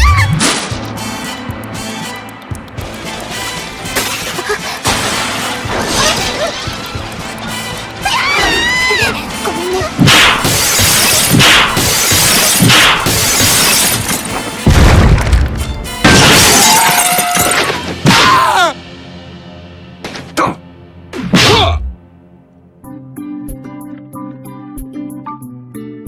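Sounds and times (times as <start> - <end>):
background music: 0.0 - 26.0
cry falling in pitch: 8.0 - 9.2
crashing shattering impacts: 10.0 - 18.0.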